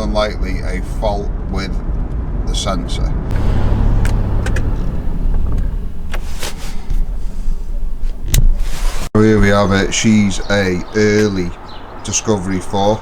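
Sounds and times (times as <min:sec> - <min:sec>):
engine hum inside car: 0:03.3 - 0:08.2.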